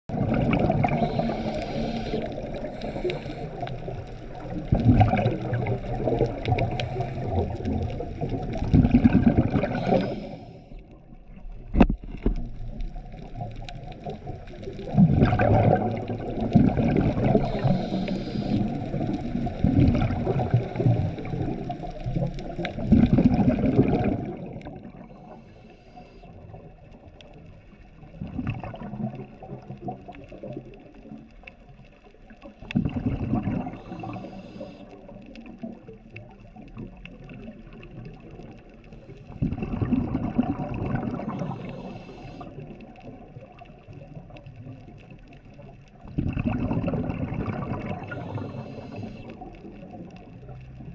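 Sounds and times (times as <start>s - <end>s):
underwater regulator bubbling exhalations: 0.1s - 10.5s, 13.2s - 25.4s, 28.2s - 30.4s, 32.6s - 34.7s, 39.3s - 42.8s, 46.0s - 50.9s.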